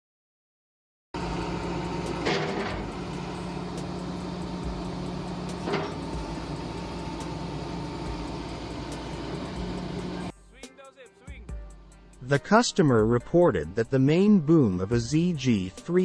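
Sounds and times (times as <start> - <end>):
diesel engine humming: 1.2 - 10.3.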